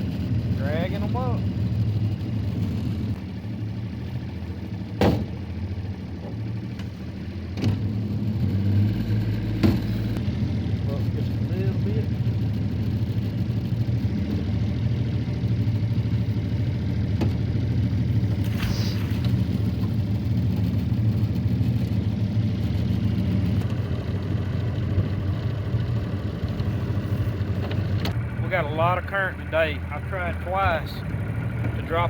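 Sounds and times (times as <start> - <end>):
outboard motor running: 0.0 - 32.0
brief knock: 5.0 - 5.4
short swish: 18.4 - 19.4.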